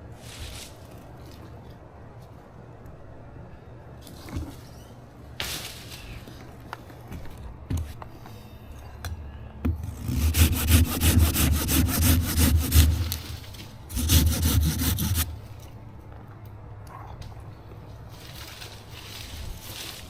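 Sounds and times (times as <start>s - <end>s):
hand saw cutting wood: 9.7s - 15.4s.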